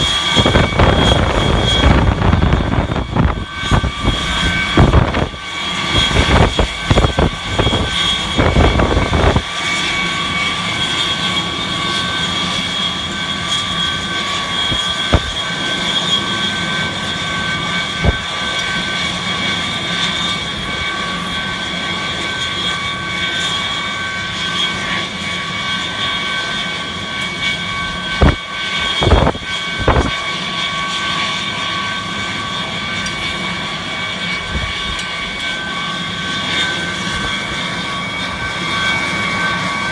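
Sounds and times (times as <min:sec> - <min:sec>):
wind buffeting microphone: 0:00.0 - 0:10.8, 0:13.8 - 0:15.9, 0:17.0 - 0:19.5, 0:27.4 - 0:30.9, 0:34.2 - 0:39.9
machine motor whine and rumble: 0:00.0 - 0:39.9.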